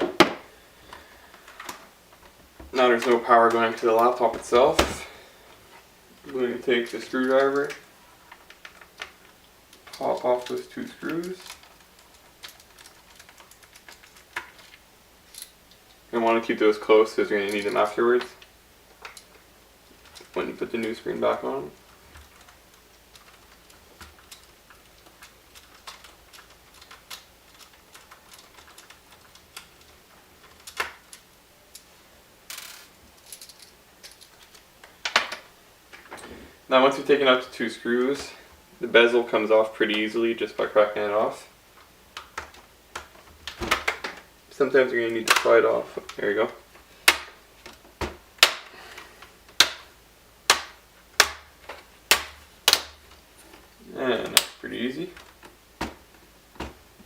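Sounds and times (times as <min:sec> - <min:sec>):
plastic clips snapping: 0:45.2 - 0:56.8.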